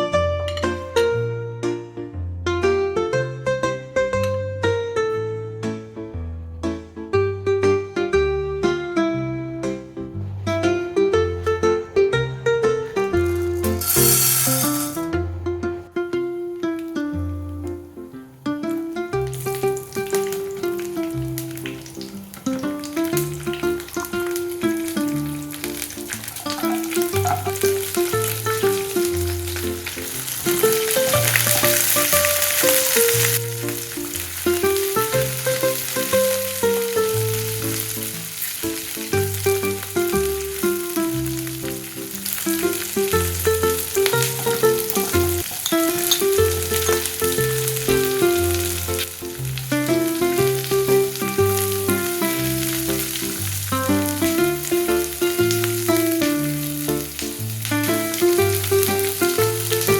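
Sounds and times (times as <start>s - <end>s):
food sizzling in oil: 13.2s - 15.0s, 18.7s - 59.9s.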